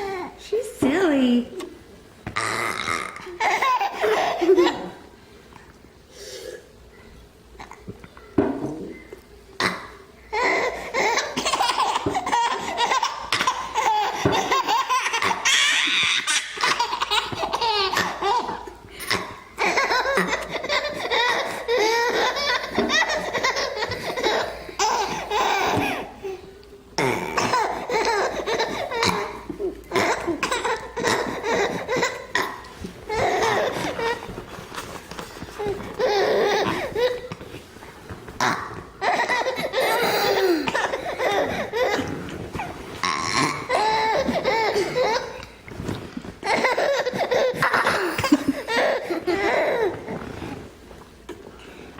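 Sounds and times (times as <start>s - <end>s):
baby laughing: 2.4s - 5.0s, 10.3s - 26.4s, 27.1s - 34.4s, 35.6s - 37.4s, 38.4s - 42.3s, 43.0s - 45.5s, 46.4s - 50.2s.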